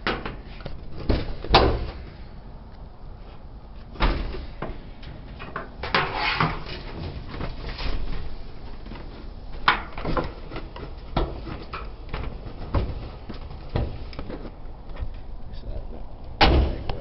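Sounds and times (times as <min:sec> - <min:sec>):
knocks and clunks of dryer parts: 0:00.0 - 0:02.0, 0:03.9 - 0:15.2.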